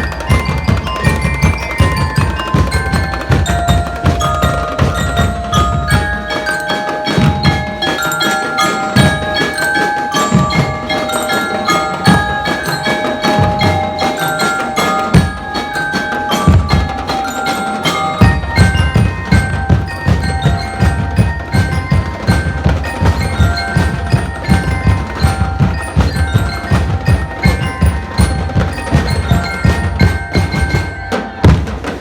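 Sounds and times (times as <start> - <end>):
bell lyres playing melody: 0.0 - 32.0
dense steady drumming: 0.0 - 32.0.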